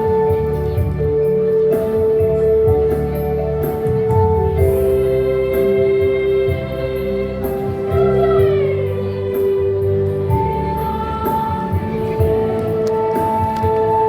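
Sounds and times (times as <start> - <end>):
instrumental accompaniment: 0.0 - 14.0
choir singing in harmony: 4.7 - 14.0.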